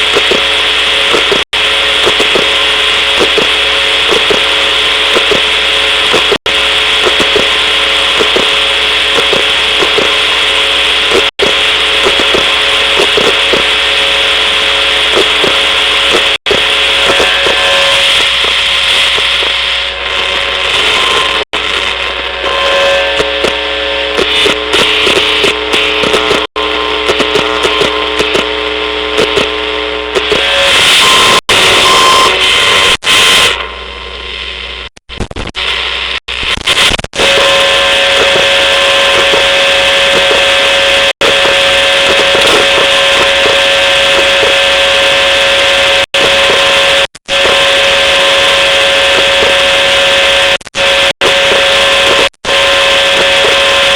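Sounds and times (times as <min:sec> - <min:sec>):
steady whining tones: 0:00.0 - 0:34.9
electronic buzzing and hiss: 0:00.0 - 0:53.9
electronic crackles: 0:00.0 - 0:53.9.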